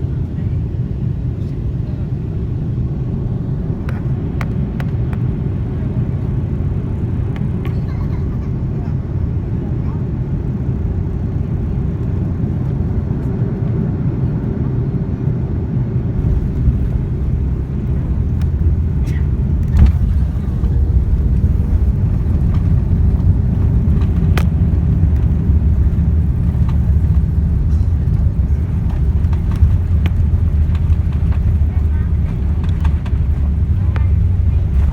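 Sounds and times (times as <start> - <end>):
airliner cabin engine rumble: 0.0 - 34.9.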